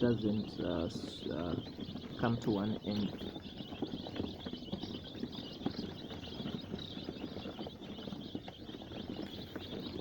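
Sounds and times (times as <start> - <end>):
chicks peeping: 0.0 - 10.0.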